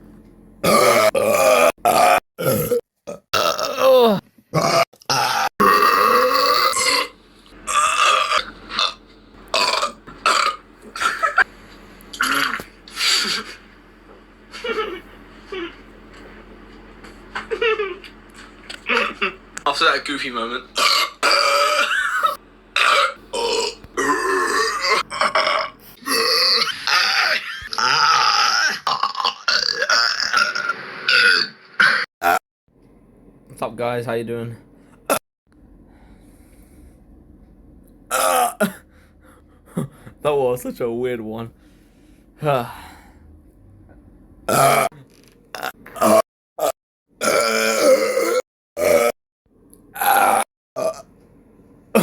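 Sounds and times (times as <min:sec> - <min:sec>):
person burping: 0:00.6 - 0:11.5, 0:12.1 - 0:13.6, 0:18.7 - 0:19.4, 0:20.8 - 0:32.4, 0:38.1 - 0:38.8, 0:44.5 - 0:49.2, 0:49.9 - 0:51.1.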